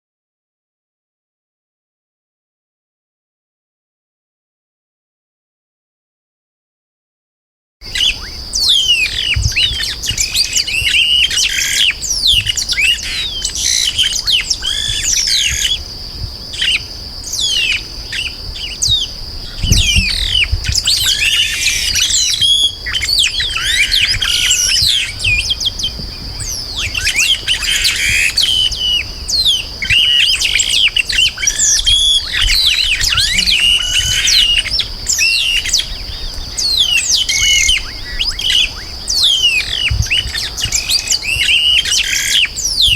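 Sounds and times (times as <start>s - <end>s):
bird singing chirps and whistles: 7.8s - 42.9s
steady high-pitched tone: 32.4s - 34.6s.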